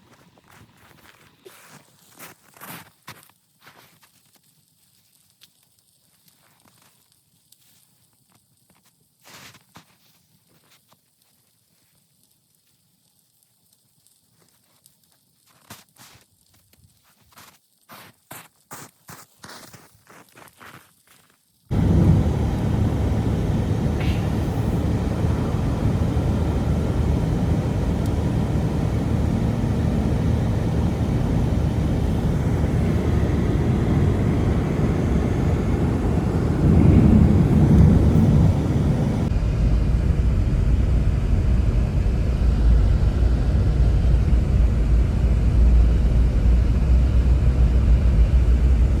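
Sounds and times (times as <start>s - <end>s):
wind buffeting microphone: 21.7s - 44.4s
blizzard wind blowing hard: 21.7s - 49.0s.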